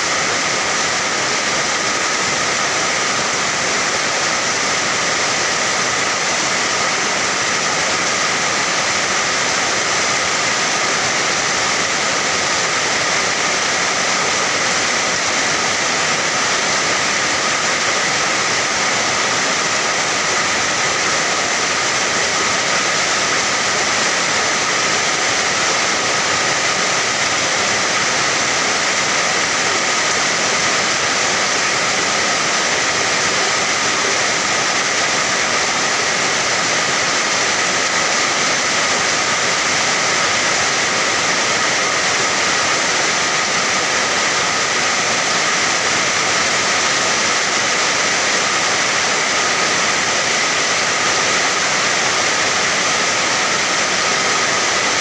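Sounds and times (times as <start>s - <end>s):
heavy rainfall: 0.0s - 55.0s.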